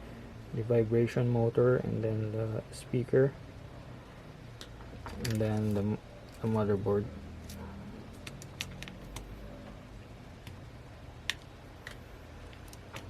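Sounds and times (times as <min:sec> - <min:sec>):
steady low hum: 0:00.0 - 0:13.0
small phone parts clicking: 0:07.4 - 0:09.4.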